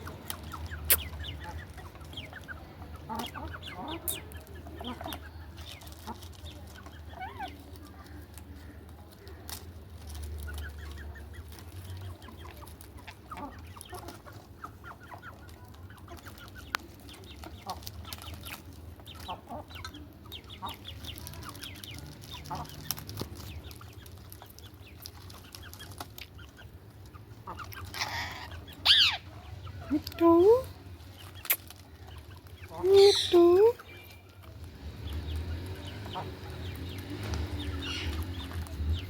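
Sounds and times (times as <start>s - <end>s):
parakeet chattering: 27.4s - 30.0s.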